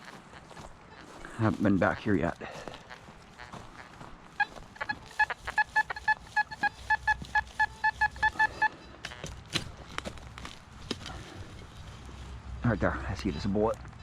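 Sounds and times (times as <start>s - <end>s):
metal detector beeping: 3.4s - 9.3s.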